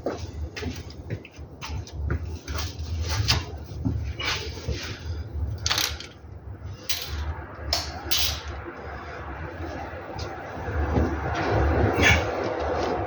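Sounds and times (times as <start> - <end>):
tools and car parts clattering: 5.6 - 6.2, 6.8 - 8.5.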